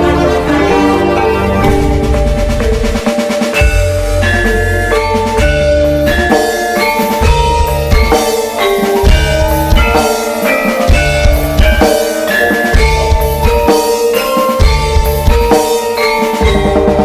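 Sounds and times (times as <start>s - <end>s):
melody of short pitched notes: 1.1s - 5.4s
heavy bass pulses: 1.6s - 4.2s
drum kit beat: 1.6s - 17.0s.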